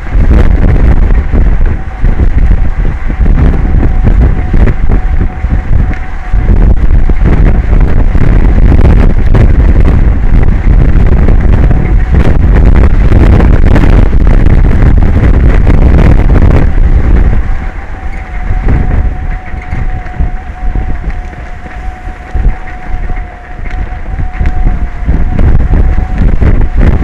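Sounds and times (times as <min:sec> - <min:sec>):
wind buffeting microphone: 0:00.0 - 0:27.0.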